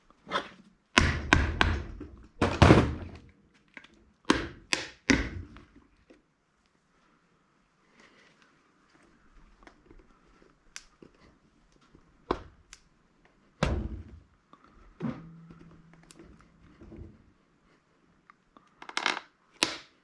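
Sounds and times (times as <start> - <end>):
faint low hum: 5.6 - 18.8.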